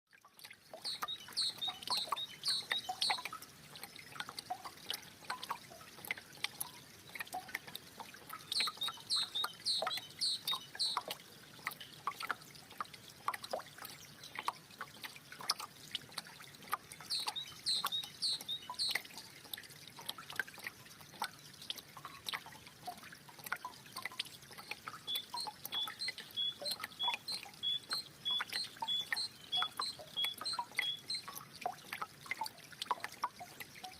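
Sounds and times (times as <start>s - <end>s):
water trickling and dripping: 0.1s - 33.9s
bird chirping: 0.8s - 3.3s, 8.5s - 11.1s, 17.1s - 19.0s, 25.1s - 31.3s.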